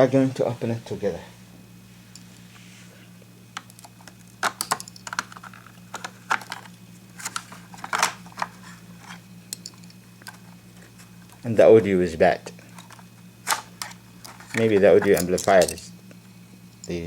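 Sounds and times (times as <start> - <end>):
steady low hum: 0.0 - 17.0
hands handling plastic radio: 3.6 - 9.2, 10.2 - 11.4, 12.7 - 15.2.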